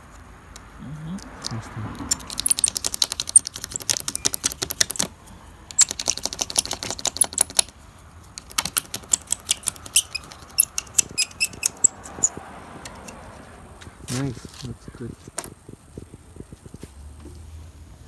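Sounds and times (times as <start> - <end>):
razor blade scraping glass: 1.4 - 5.1, 5.8 - 7.7, 8.4 - 12.3.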